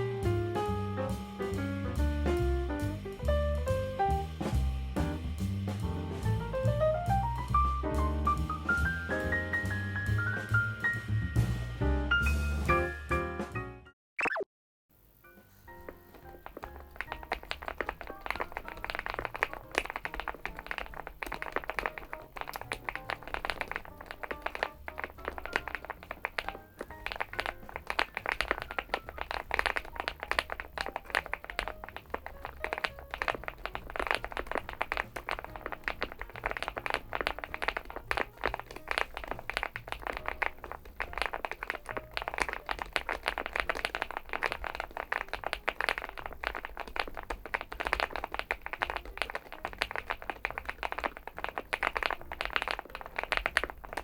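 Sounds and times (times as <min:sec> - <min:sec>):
fast mechanical keyboard typing: 0:16.2 - 0:54.0.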